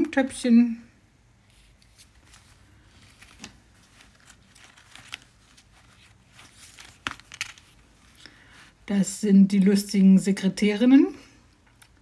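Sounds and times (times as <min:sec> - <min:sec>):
paper rustling and crinkling: 0:01.5 - 0:08.8.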